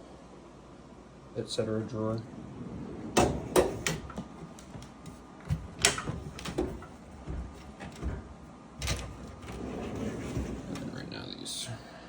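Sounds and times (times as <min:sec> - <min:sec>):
tools knocking in metal drawer: 0:03.2 - 0:04.4.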